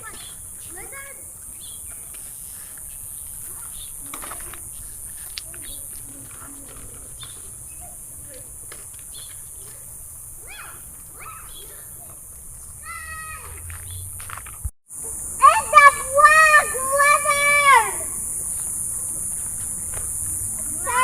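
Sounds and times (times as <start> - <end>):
steady high hiss: 0.0 - 21.0
faint bird chirps: 10.4 - 12.2.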